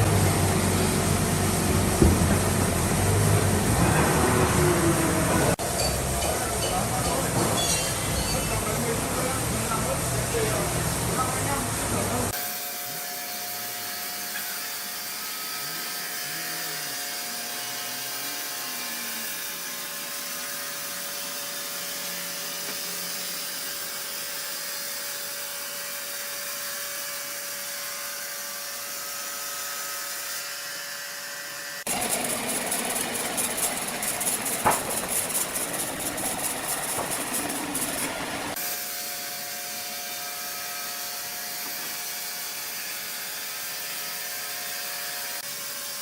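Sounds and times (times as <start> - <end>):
rough machine noise: 0.0 - 12.4, 31.7 - 39.0
sawmill machinery hissing: 0.0 - 18.5, 31.8 - 46.0.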